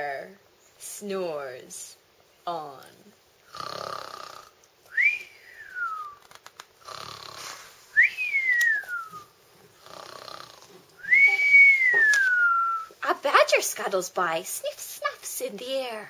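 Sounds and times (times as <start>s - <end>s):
person imitating rasping snore: 3.5s - 4.5s, 6.8s - 7.6s, 9.8s - 10.7s
whistle sliding in pitch: 11.0s - 12.9s.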